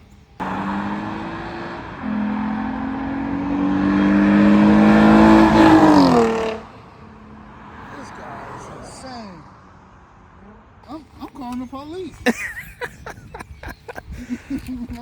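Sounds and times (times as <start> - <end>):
car engine revving: 0.0 - 10.8.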